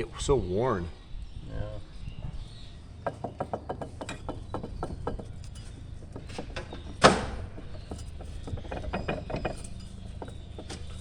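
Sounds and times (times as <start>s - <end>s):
hand tools clicking and knocking: 3.0s - 11.0s.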